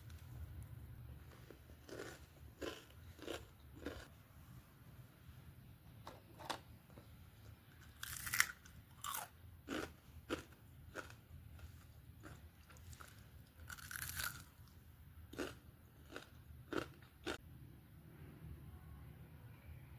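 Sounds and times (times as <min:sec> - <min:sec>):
crunchy snack chewing: 0:01.2 - 0:04.1, 0:07.8 - 0:14.7, 0:15.3 - 0:17.4.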